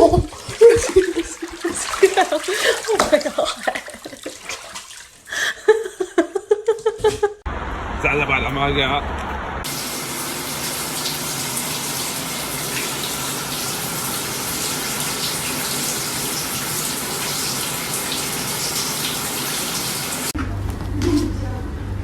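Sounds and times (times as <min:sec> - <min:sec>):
running water pouring: 0:00.0 - 0:05.4, 0:09.7 - 0:20.4.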